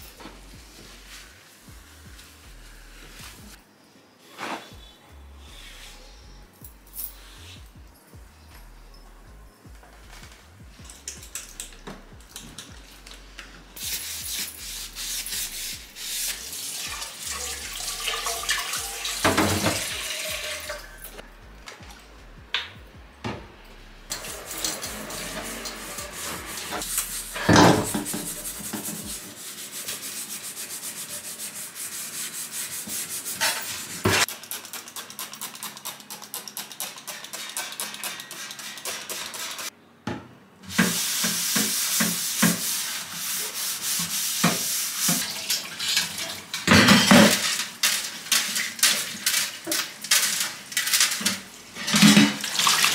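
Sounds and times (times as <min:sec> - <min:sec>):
tap water running into sink: 0:16.6 - 0:20.9.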